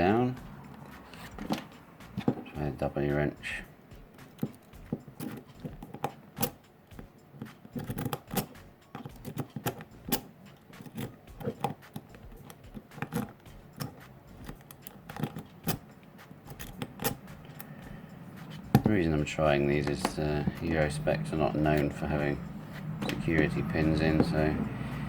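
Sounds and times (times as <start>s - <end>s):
lock pick clicking and scraping: 4.2s - 19.0s, 23.0s - 24.5s.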